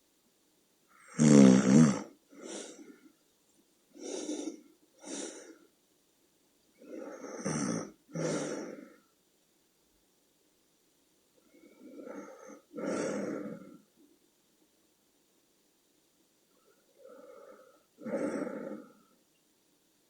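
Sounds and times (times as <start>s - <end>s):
woman snoring: 1.0s - 3.0s, 6.8s - 9.0s, 11.5s - 13.8s, 17.0s - 19.1s.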